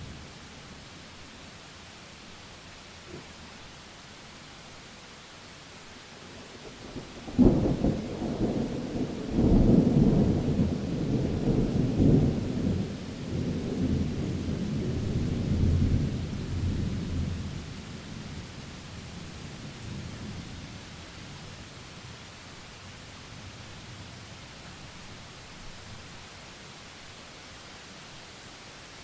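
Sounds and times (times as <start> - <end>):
rain hiss: 0.0 - 29.0
thunder crack and rumble: 6.9 - 17.6.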